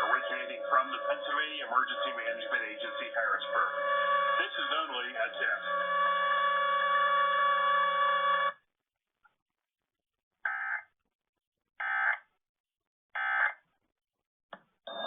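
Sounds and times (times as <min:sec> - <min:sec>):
screechy digital data tones: 0:00.0 - 0:08.5
steady electronic tone: 0:00.0 - 0:08.5.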